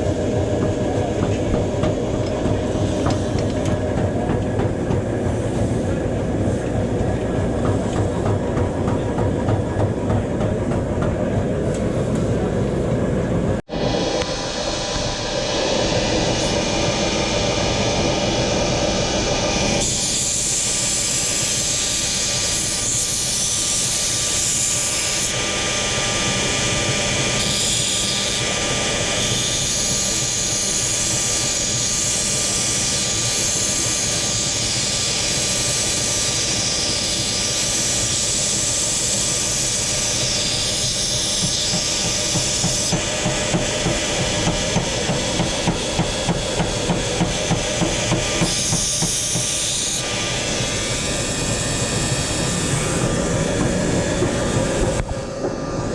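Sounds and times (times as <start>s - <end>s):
loud hissing noise: 12.1s - 55.9s
hammer blows on metal: 39.8s - 55.1s.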